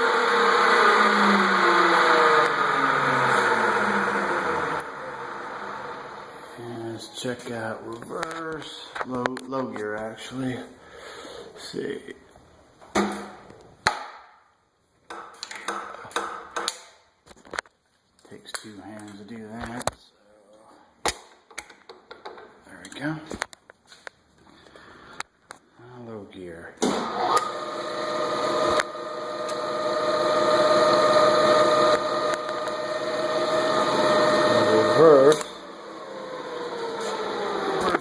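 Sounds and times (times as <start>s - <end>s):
milling machine spindle whine: 27.2s - 38.0s.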